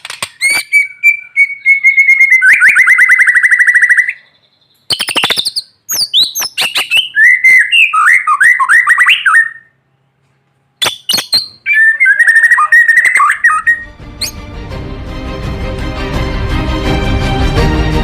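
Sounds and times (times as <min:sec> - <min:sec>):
bird singing in rapid bursts: 0:00.0 - 0:09.8, 0:10.8 - 0:14.4
background music: 0:13.5 - 0:18.0.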